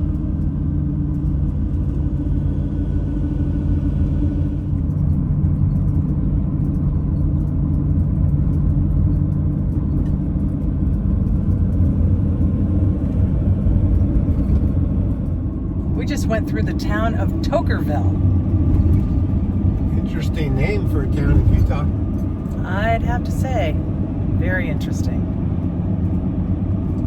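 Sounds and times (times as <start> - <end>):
van engine and road rumble: 0.0 - 27.0.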